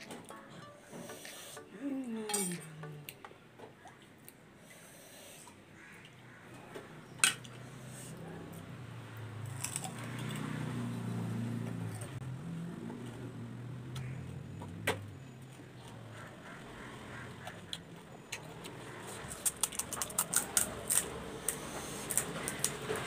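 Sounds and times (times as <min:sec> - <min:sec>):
low steady hum: 0:00.0 - 0:04.6
crunching and wet chewing: 0:09.4 - 0:10.5, 0:15.8 - 0:23.0.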